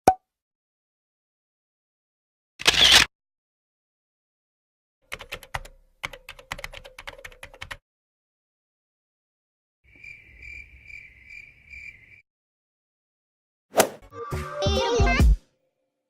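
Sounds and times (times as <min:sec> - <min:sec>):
typing on computer keyboard: 0:05.1 - 0:07.8.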